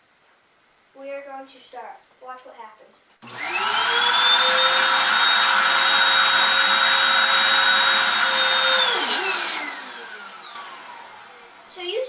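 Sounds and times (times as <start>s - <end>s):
vacuum cleaner motor whine: 3.2s - 12.0s.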